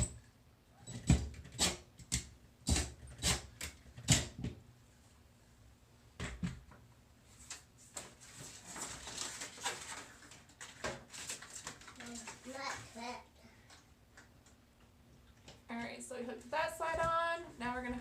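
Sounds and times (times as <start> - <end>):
soft scraping and rustling: 7.2 - 13.0.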